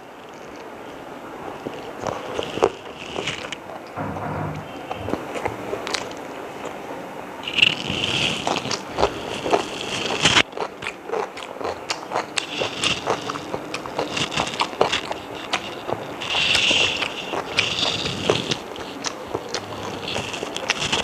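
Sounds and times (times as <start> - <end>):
person chewing food: 1.6 - 3.6, 7.5 - 21.0.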